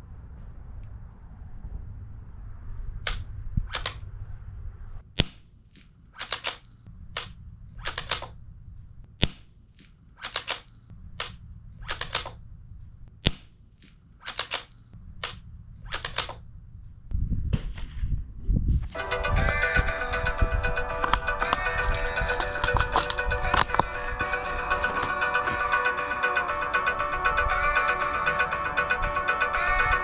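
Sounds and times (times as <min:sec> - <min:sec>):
rifle bolt metallic clicks: 0:03.1 - 0:04.0, 0:05.2 - 0:08.4, 0:09.2 - 0:12.4, 0:13.2 - 0:16.4.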